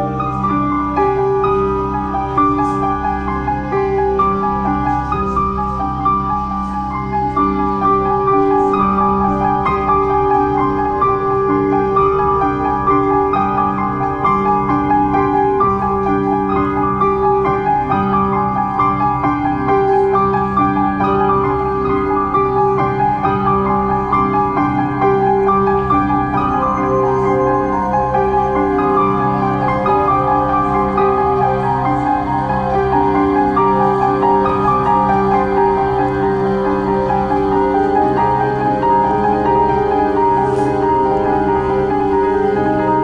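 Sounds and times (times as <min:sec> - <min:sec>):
instrumental piano music: 0:00.0 - 0:43.0.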